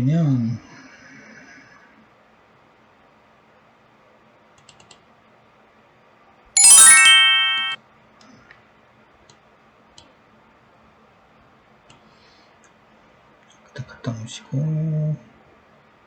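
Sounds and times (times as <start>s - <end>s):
bright chime ding: 6.6s - 7.8s.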